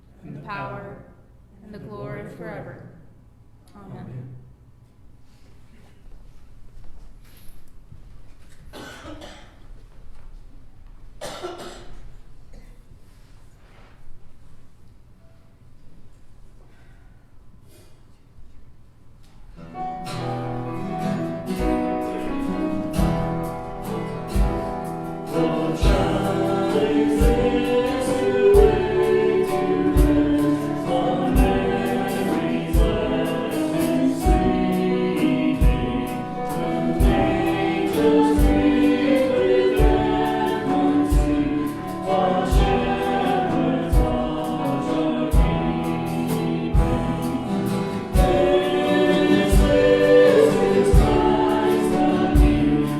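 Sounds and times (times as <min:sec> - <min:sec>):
steady drum beat: 0:22.9 - 0:52.9
voices singing together: 0:23.0 - 0:52.9.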